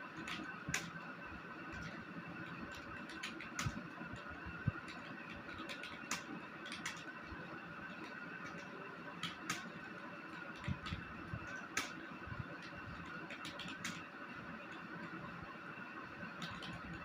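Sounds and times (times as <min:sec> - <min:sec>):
computer keyboard key clicks: 0:02.7 - 0:03.8, 0:04.8 - 0:07.1, 0:08.5 - 0:09.7, 0:13.0 - 0:14.0, 0:16.4 - 0:16.8.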